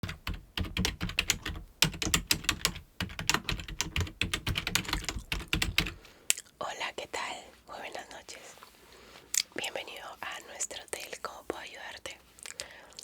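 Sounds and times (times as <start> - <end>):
typing on computer keyboard: 0.0 - 6.0.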